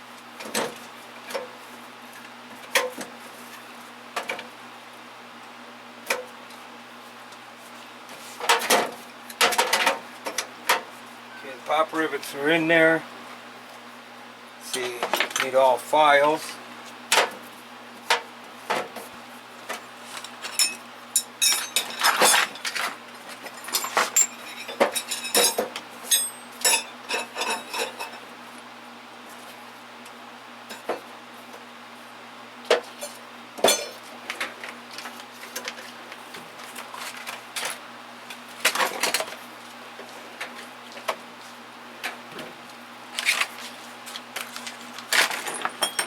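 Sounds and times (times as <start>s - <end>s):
metal hand tools clinking: 20.5s - 22.5s.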